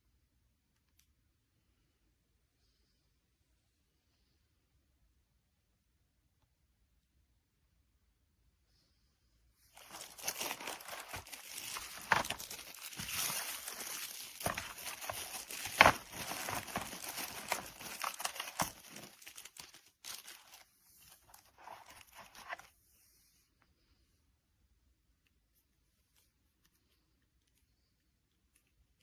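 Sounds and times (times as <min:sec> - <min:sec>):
crinkling and rustling handling noise: 0:09.6 - 0:23.9.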